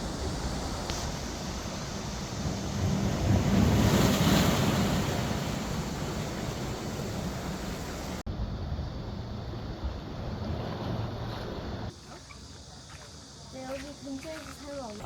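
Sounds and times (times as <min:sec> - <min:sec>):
sea waves washing on shore: 0:00.0 - 0:08.2
outdoor noise: 0:00.0 - 0:15.0.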